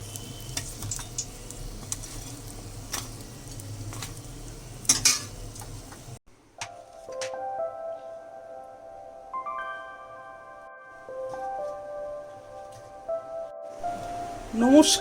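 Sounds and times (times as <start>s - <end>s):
food sizzling in hot oil: 0.0s - 6.2s
metal utensil clicking on pan: 4.8s - 5.7s
music: 6.5s - 15.0s.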